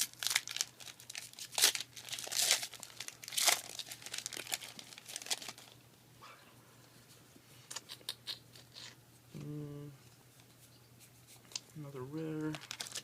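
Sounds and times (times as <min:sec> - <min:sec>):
foil wrapper crinkling and tearing: 0:00.0 - 0:05.8, 0:12.3 - 0:13.0.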